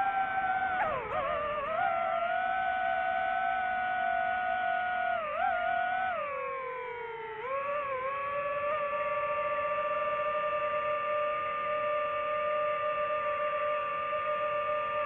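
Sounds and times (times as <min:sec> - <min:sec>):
drone propellers whining: 0:00.0 - 0:06.1.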